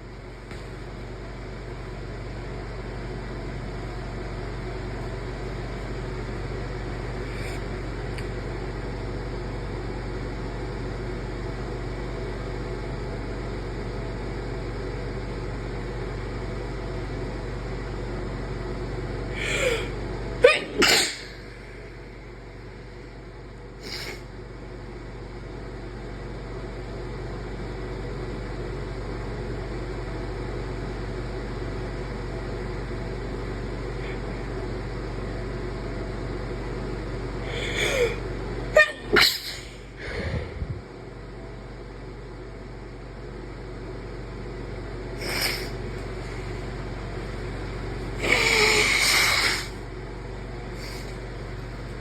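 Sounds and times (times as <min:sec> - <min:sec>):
steady background hum: 0:00.0 - 0:52.0
person sneezing: 0:19.4 - 0:21.4, 0:38.8 - 0:40.4, 0:45.2 - 0:45.8, 0:48.2 - 0:49.8
breath or sniff: 0:23.8 - 0:24.2, 0:39.3 - 0:40.6, 0:45.2 - 0:45.8, 0:48.2 - 0:49.8, 0:50.8 - 0:51.2.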